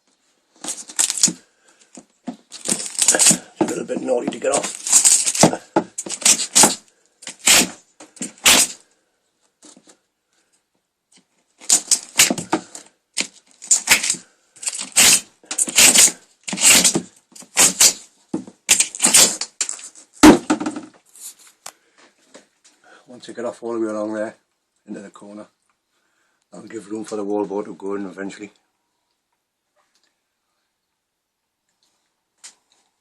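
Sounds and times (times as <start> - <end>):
sharp wood crack: 0.6 - 8.8, 11.6 - 21.0
chisel scraping and prying board: 5.2 - 8.8, 14.8 - 18.0.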